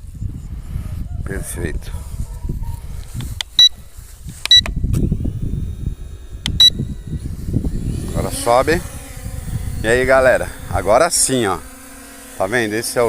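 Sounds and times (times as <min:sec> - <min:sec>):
wind buffeting microphone: 0:00.0 - 0:11.8.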